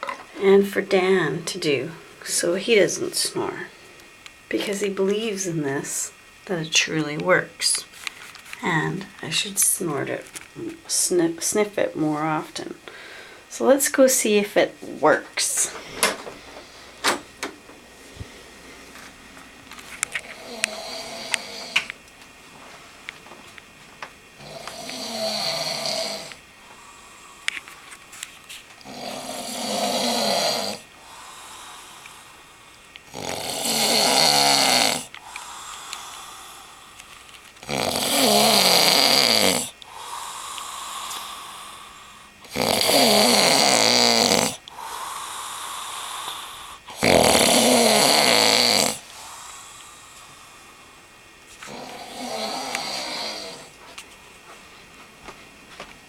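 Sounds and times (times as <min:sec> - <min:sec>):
quiet breaths: 0:12.8 - 0:13.6, 0:24.4 - 0:55.1
man snoring heavily: 0:20.2 - 0:21.9, 0:24.4 - 0:27.5, 0:28.8 - 0:37.0, 0:37.6 - 0:51.0, 0:51.6 - 0:53.8.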